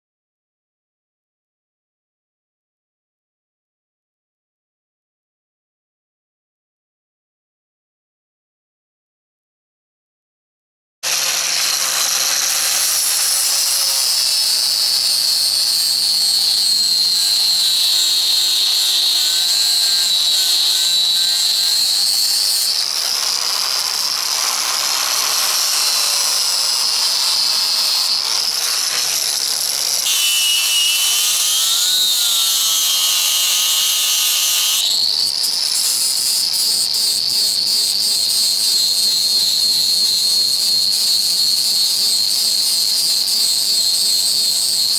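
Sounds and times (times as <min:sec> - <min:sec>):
power tool whining: 0:11.0 - 0:44.9.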